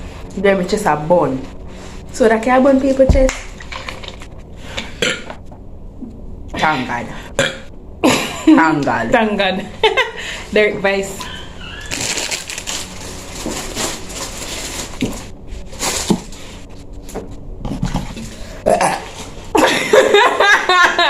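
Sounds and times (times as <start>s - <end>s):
woman belching: 5.0s - 5.4s, 7.4s - 8.3s, 18.6s - 19.1s.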